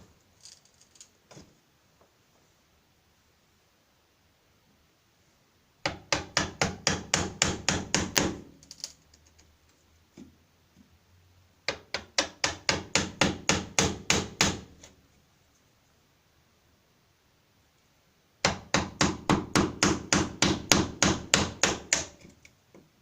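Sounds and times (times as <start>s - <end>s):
hammer striking wood: 5.8s - 8.5s, 11.7s - 14.7s, 18.4s - 22.2s.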